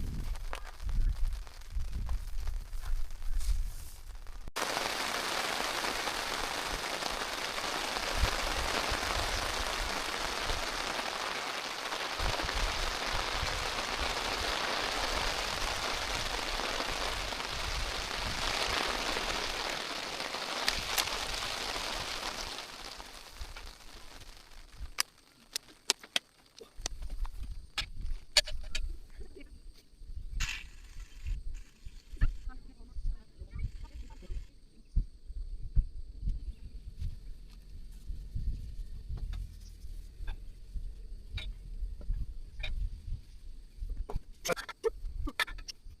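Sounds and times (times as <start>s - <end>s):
steady rain patter: 0.0s - 28.8s.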